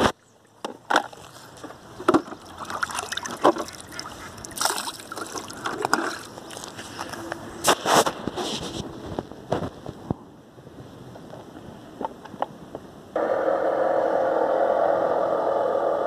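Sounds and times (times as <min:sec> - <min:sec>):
water splashes and clicks: 0:00.5 - 0:07.2
electric motor humming: 0:13.2 - 0:16.0.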